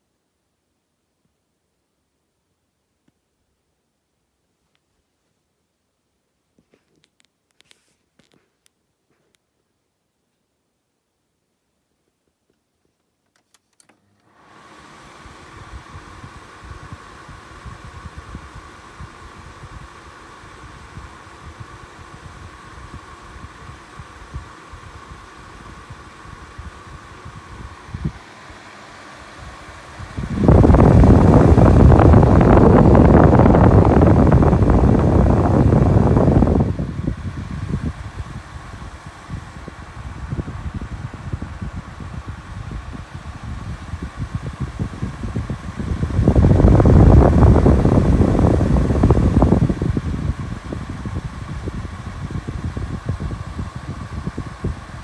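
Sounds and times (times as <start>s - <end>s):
dehumidifier fan hum: 14.3s - 55.0s
wind buffeting microphone: 29.8s - 55.0s.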